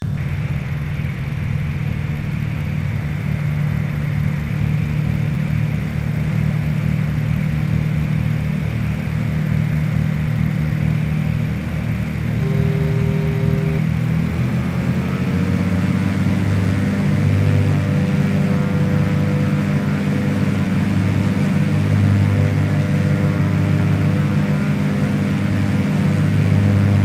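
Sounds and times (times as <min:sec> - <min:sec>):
propeller plane engines droning: 0:00.0 - 0:27.0.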